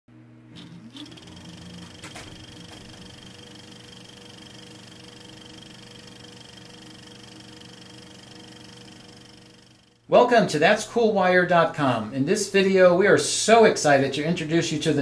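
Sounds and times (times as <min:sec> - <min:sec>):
low hum: 0:00.1 - 0:10.2.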